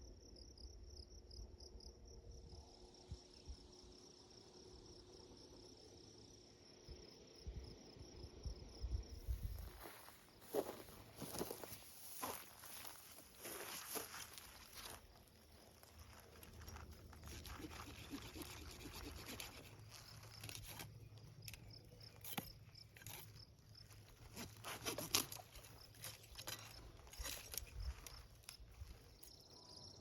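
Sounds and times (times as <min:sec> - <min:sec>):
crickets chirping: 0:00.0 - 0:30.0
rustling and crunching in brush: 0:09.2 - 0:21.4, 0:22.0 - 0:29.2.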